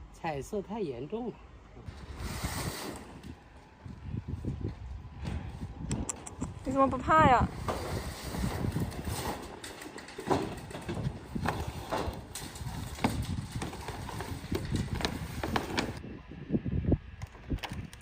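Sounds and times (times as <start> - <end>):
irregular knocks and clatter: 8.5 - 16.0.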